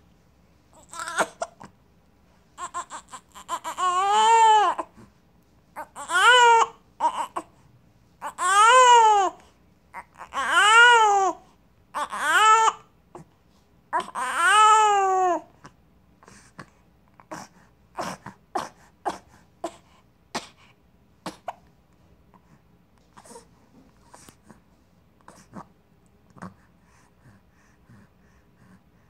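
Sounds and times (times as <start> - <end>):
baby crying: 0.8 - 1.6, 2.6 - 4.9, 5.8 - 7.5, 8.2 - 9.4, 10.0 - 11.4, 12.0 - 12.9, 13.9 - 15.5
baby hiccups: 1.0 - 1.7.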